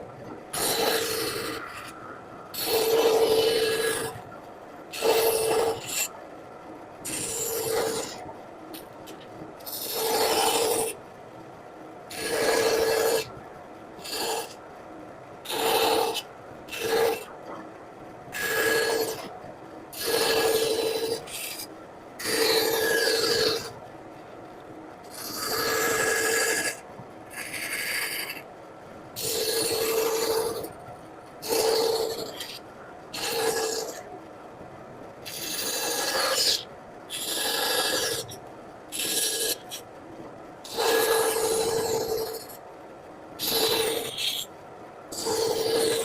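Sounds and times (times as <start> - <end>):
carving tool scraping wood: 0.6 - 2.0, 2.6 - 4.2, 4.9 - 6.1, 7.1 - 8.2, 9.6 - 11.0, 12.1 - 13.3, 14.0 - 14.6, 15.5 - 17.3, 18.4 - 19.3, 20.0 - 23.8, 25.1 - 26.8, 27.4 - 28.4, 29.2 - 30.7, 31.4 - 32.6, 33.2 - 34.1, 35.3 - 39.8, 40.7 - 42.6, 43.4 - 44.5, 45.2 - 46.0.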